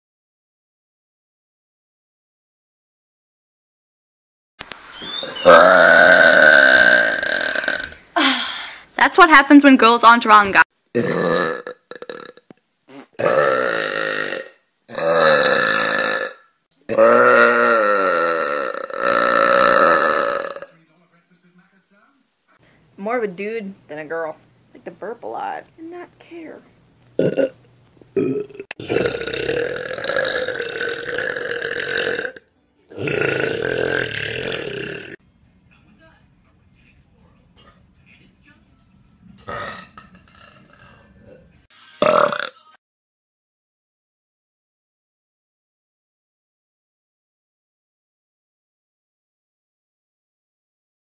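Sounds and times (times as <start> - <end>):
girl burping: 5.4 - 8.6, 11.0 - 20.7, 27.2 - 27.6, 28.2 - 35.2, 39.5 - 41.0, 42.0 - 42.6.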